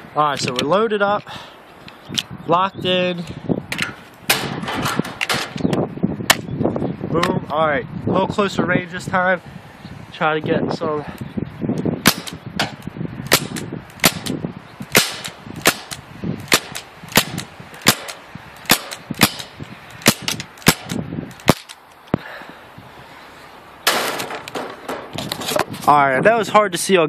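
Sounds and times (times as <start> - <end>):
rustle: 0.0 - 26.7
pellet gun shots: 12.1 - 12.4, 13.3 - 21.7, 23.9 - 24.6.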